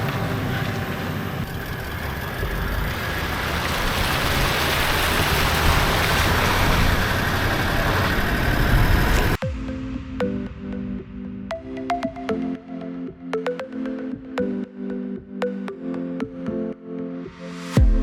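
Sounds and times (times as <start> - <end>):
vehicle engine rumble: 0.0 - 9.4
tyres and wind hissing: 0.0 - 11.4.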